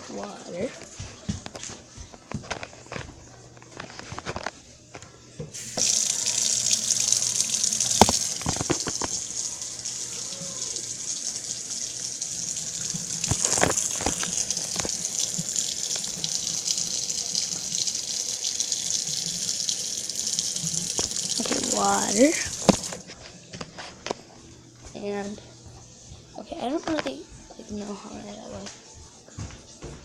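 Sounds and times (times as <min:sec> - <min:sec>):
water running: 0:05.5 - 0:23.2.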